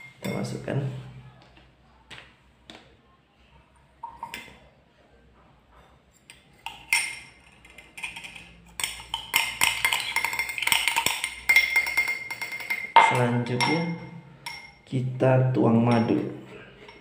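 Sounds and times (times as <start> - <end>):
teaspoon stirring in a glass: 6.1 - 14.9, 15.9 - 17.0.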